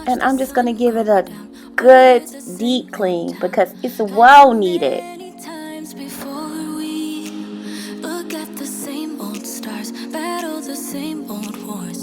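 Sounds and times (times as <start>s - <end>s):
slow pop ballad: 5.0s - 12.0s.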